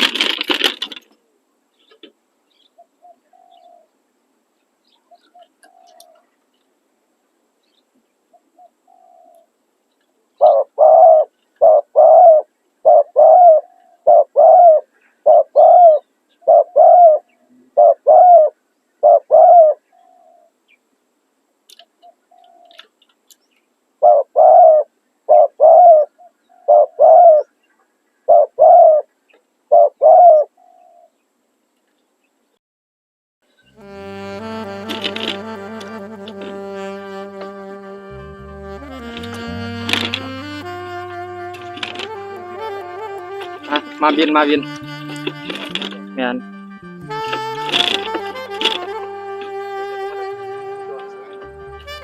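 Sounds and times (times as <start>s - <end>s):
dove cooing: 2.8s - 3.9s, 5.1s - 6.3s, 8.3s - 9.5s, 10.4s - 20.5s, 24.0s - 27.5s, 28.3s - 29.1s, 29.7s - 31.2s, 34.3s - 52.0s.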